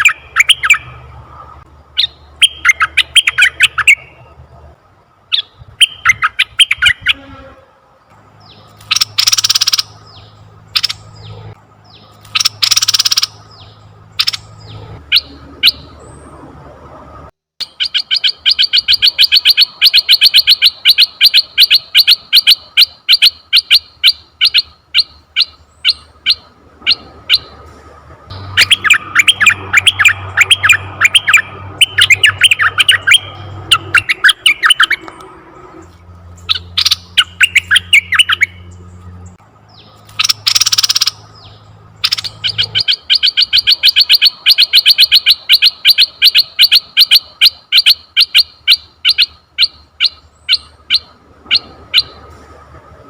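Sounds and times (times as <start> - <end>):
bird chirping: 0.0 - 4.5, 5.2 - 16.7, 17.6 - 27.7, 28.3 - 52.2
bird rising and falling notes: 28.2 - 38.8.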